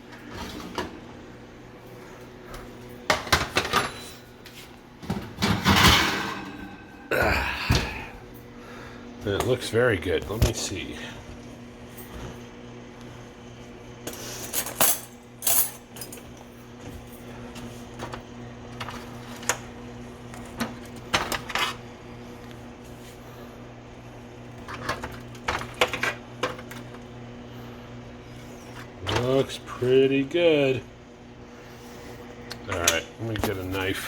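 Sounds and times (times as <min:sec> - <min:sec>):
steady low hum: 0:00.0 - 0:34.0
baking dish and utensils clattering: 0:03.1 - 0:04.4, 0:05.0 - 0:06.9.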